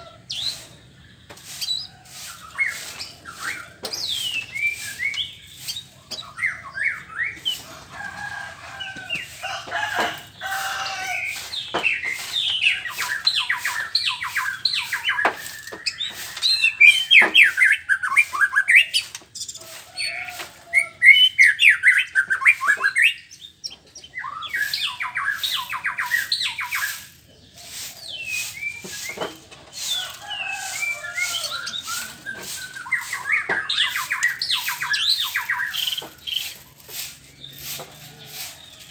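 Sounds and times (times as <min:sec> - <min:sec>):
bird singing whistles and chatters: 0:01.4 - 0:07.6, 0:11.1 - 0:27.1, 0:29.9 - 0:36.6.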